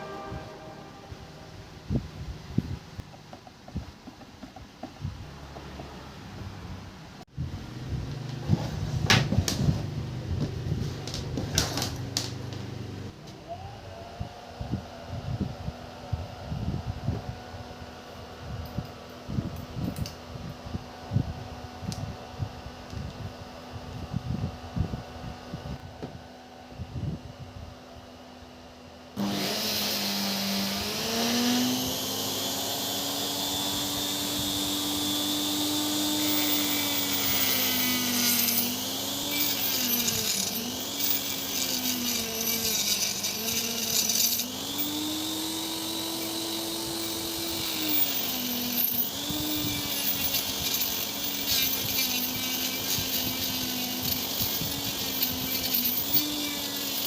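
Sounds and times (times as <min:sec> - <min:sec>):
scraping cutting noise: 0:29.2 - 0:57.0
small electric power tool running: 0:29.2 - 0:57.0.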